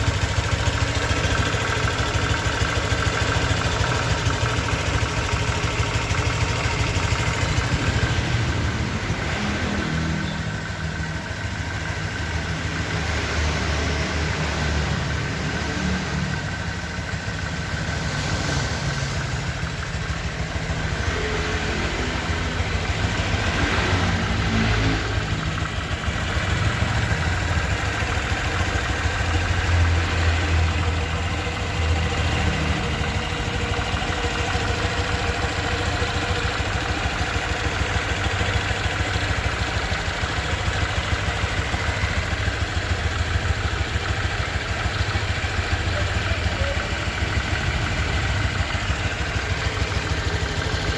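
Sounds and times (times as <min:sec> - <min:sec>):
scooter engine idling: 0:00.0 - 0:50.9.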